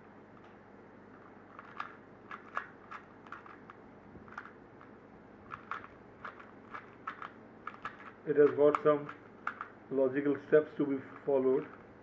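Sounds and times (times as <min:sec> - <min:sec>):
puzzle cube plastic clicks: 0:00.4 - 0:09.8.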